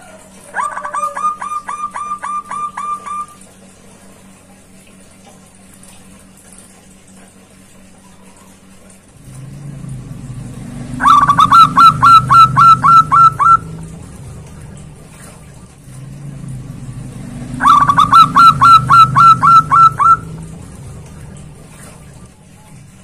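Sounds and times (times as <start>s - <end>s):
dove singing ringing notes: 0.6s - 3.4s, 10.9s - 13.9s, 17.3s - 20.8s
steady low hum: 8.7s - 23.0s.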